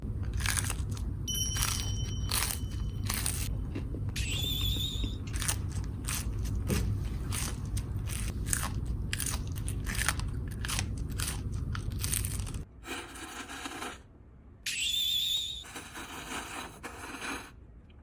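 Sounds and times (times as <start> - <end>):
crunching and chewing sandwich: 0.1 - 4.0, 4.7 - 13.8.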